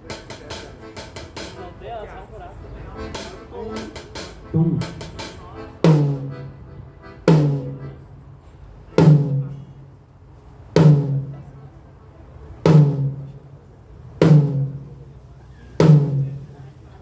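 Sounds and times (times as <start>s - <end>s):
drum hits with low tone: 3.2s - 6.6s, 7.3s - 8.0s, 9.0s - 9.8s, 10.8s - 11.5s, 12.7s - 13.4s, 14.2s - 15.0s, 15.8s - 16.6s.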